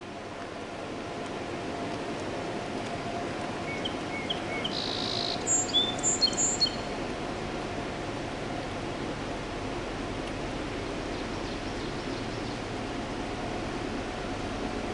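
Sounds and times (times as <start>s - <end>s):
faint hum: 0.0s - 14.9s
songbird chirping and whistling: 3.6s - 7.0s.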